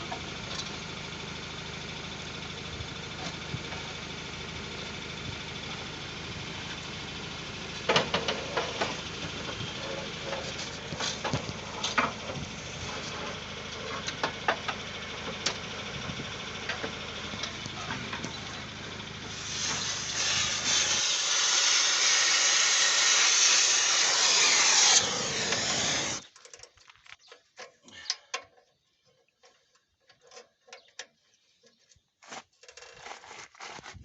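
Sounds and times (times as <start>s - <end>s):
engine idling: 0.0s - 26.4s
power tool on metal: 19.2s - 26.3s.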